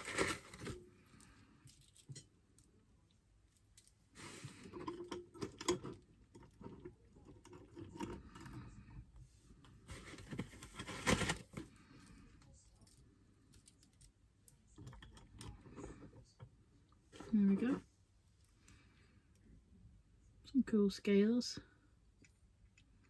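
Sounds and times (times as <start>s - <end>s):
packaging rustling: 0.0s - 0.9s, 9.9s - 11.6s.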